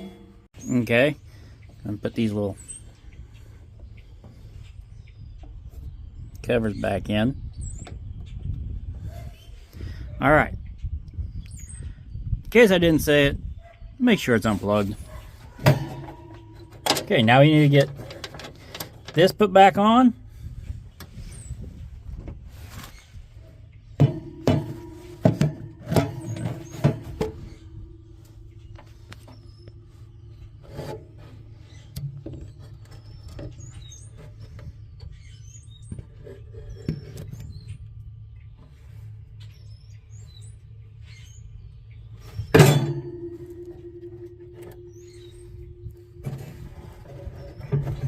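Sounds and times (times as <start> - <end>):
metal parts clinking and knocking: 15.6 - 19.2.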